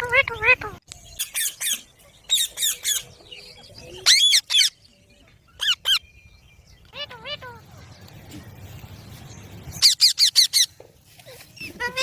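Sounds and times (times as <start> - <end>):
parrot squawking: 4.0 - 4.8, 5.6 - 6.0, 9.8 - 10.7.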